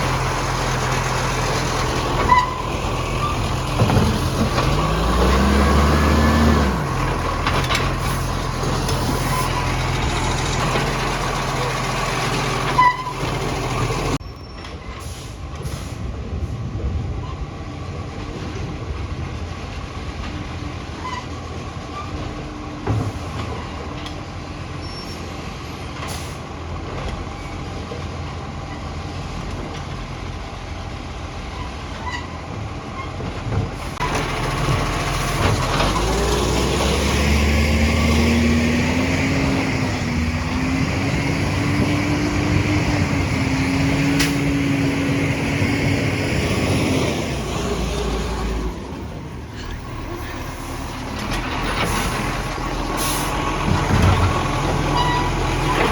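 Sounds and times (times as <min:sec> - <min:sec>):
garbage truck engine running: 0:00.0 - 0:14.3, 0:26.1 - 0:55.9.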